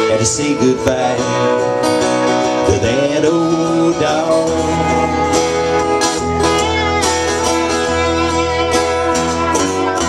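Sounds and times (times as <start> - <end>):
guitar playing: 0.0 - 10.0
lap steel guitar sliding: 0.0 - 10.0.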